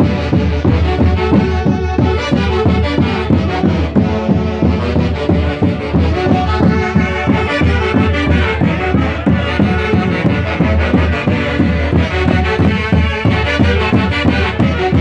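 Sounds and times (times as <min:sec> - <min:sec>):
band playing festival music: 0:00.0 - 0:15.0.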